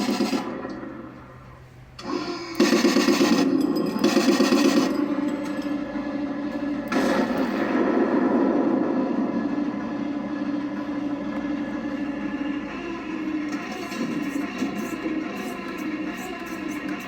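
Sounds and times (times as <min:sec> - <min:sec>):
machine-gun sound effect: 0:00.0 - 0:01.0, 0:02.1 - 0:05.1, 0:06.9 - 0:09.7, 0:13.5 - 0:17.0.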